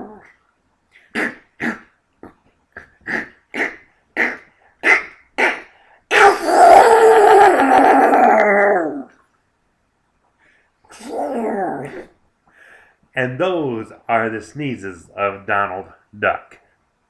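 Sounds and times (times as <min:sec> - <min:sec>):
man imitating cartoon duck sneeze: 0:01.1 - 0:01.9, 0:02.8 - 0:06.6.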